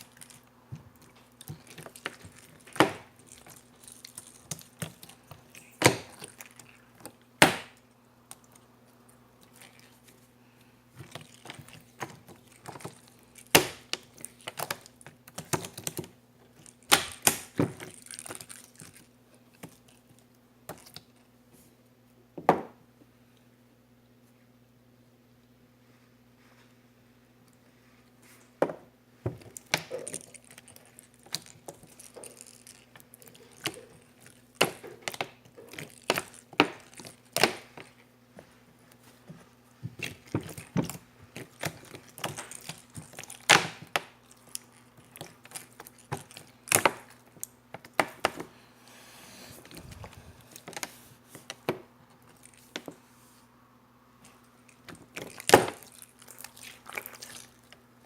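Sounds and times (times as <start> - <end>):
slime popping and crackling: 11.0 - 16.0, 16.6 - 19.0, 29.5 - 38.0, 40.0 - 48.3
steady low hum: 18.0 - 58.0.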